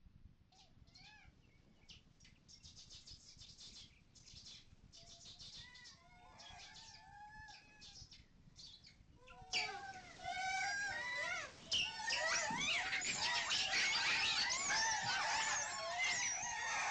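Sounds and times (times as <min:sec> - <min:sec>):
birds chirping and trilling: 0:01.8 - 0:16.9
bird repeated arching calls: 0:09.3 - 0:16.9.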